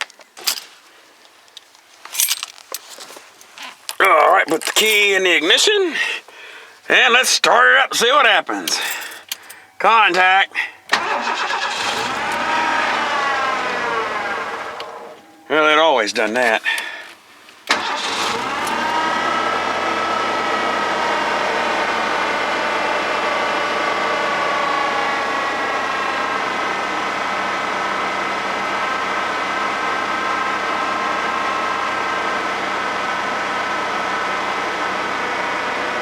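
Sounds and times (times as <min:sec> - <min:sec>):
engine running at raised idle: 0:10.9 - 0:15.4, 0:17.7 - 0:36.0
steady engine whine: 0:10.9 - 0:15.8, 0:17.7 - 0:36.0.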